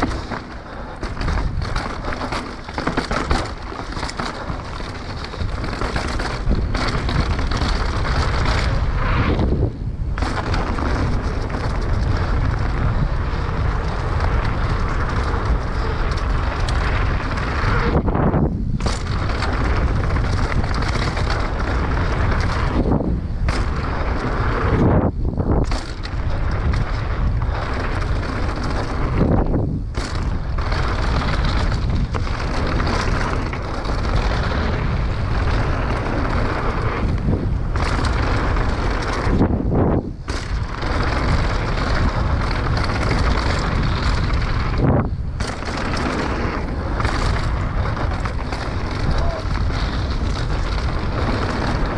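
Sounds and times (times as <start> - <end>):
mountain bike clattering and rattling: 0.0 - 51.9
wind buffeting microphone: 0.0 - 51.9
tyre roar: 45.7 - 51.9.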